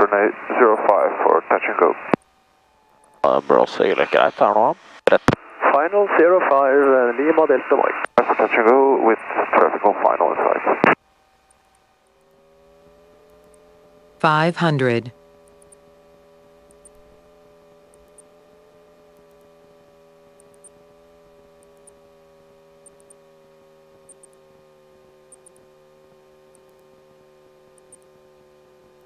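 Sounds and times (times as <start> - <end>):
light aircraft engine drone: 0.0 - 14.2, 15.1 - 29.0
faint high ticks: 16.6 - 17.0, 19.1 - 19.5, 20.4 - 20.8, 21.6 - 22.0, 22.8 - 23.2, 24.0 - 24.4, 25.3 - 25.7, 26.5 - 26.9, 27.8 - 28.1.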